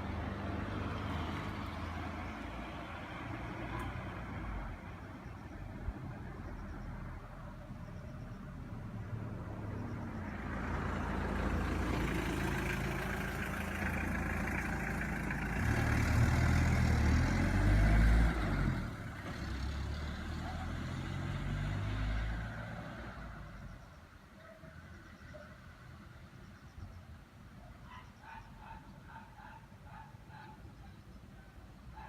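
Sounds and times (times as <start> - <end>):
vehicle engine rumbling past: 0.0 - 24.1.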